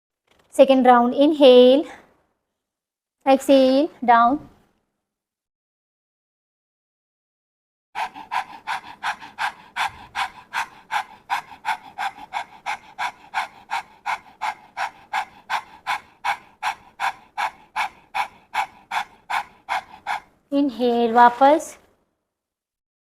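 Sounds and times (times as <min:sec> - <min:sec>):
person panting rapidly: 0:08.0 - 0:21.6.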